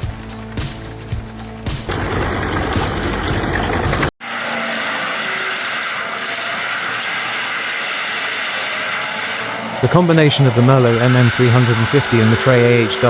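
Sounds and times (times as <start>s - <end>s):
heavy machinery running deep: 1.8s - 12.8s
machine high-pitched grinding: 1.9s - 13.0s.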